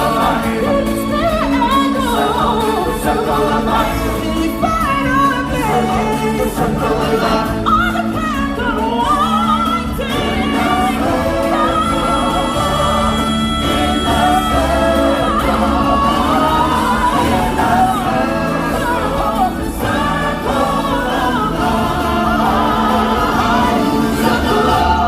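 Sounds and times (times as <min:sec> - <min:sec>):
band playing: 0:00.0 - 0:25.0
choir singing: 0:00.0 - 0:25.0
solo voices singing: 0:00.0 - 0:25.0.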